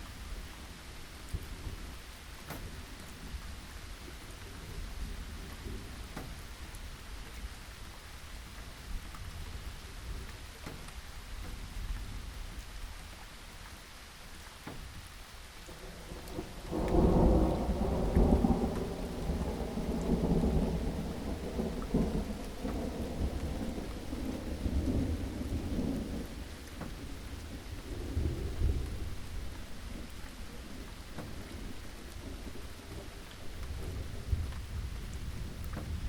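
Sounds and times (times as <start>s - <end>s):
steady rain: 0.0s - 36.0s
thunder rumbling: 15.6s - 36.0s.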